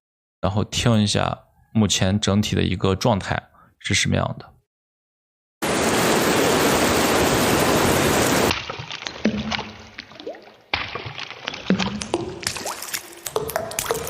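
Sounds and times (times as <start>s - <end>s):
steady rain hiss: 5.6s - 8.5s
water drips plinking with reverb: 8.5s - 14.0s.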